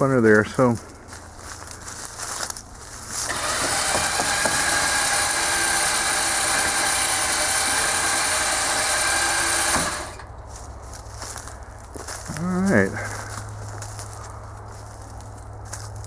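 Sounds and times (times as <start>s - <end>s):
electric winch running under load: 3.2s - 10.4s.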